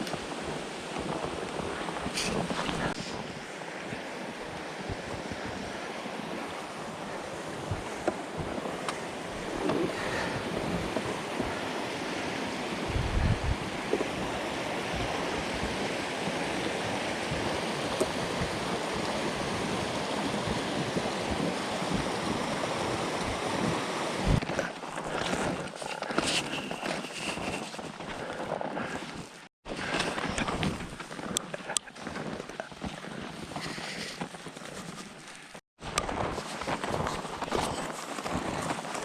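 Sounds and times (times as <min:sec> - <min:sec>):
wind rushing over microphone: 0:00.0 - 0:28.9.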